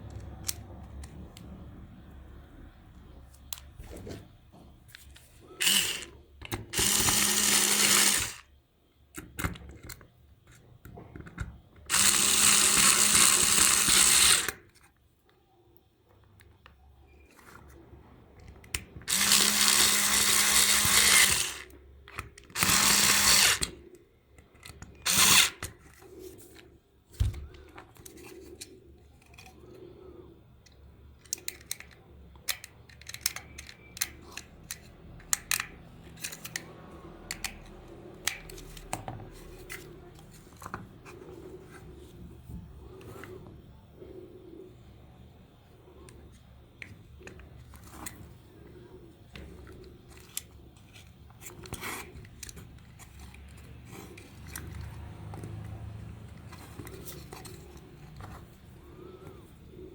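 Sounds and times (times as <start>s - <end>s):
quiet handling sounds: 2.8s - 5.6s, 14.6s - 19.1s, 25.6s - 59.9s
handheld power tool running: 5.6s - 6.1s, 6.7s - 8.4s, 11.9s - 14.6s, 19.0s - 21.7s, 22.6s - 23.7s, 25.0s - 25.6s.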